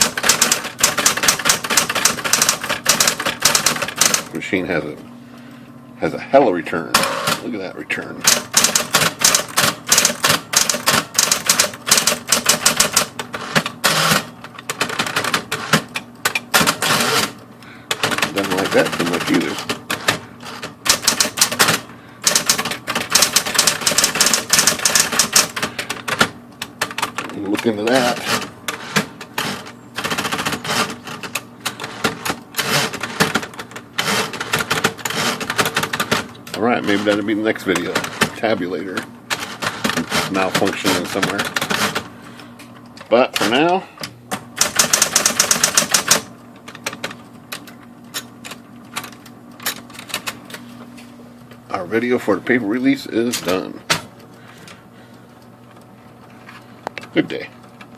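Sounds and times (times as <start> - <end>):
typewriter key clacks: 0.0 - 4.2, 8.2 - 17.3, 20.9 - 28.1, 44.6 - 50.4
typewriter mechanical rushing: 0.0 - 4.3, 8.2 - 38.5, 39.3 - 42.1, 44.6 - 47.2.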